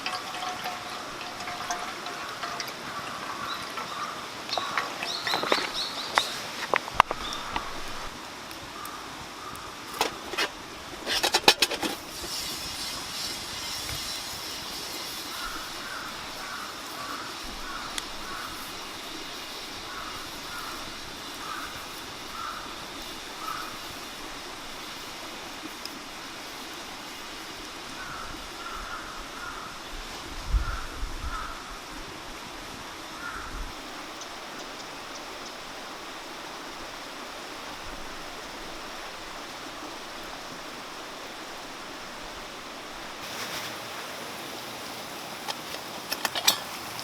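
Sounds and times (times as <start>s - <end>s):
mountain stream running: 0.0s - 47.0s.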